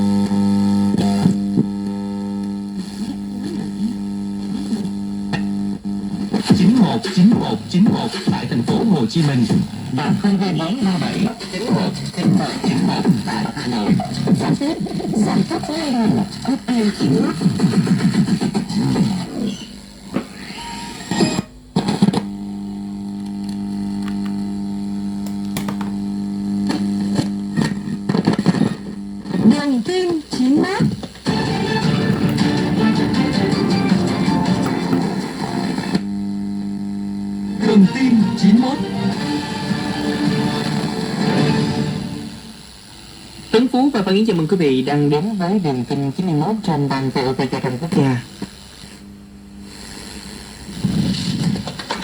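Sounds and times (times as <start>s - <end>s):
radio music from speaker: 0.0s - 49.0s, 49.6s - 52.0s
radio clicks: 12.0s - 13.8s, 21.7s - 22.4s, 23.1s - 24.5s, 25.1s - 29.0s, 30.9s - 36.1s.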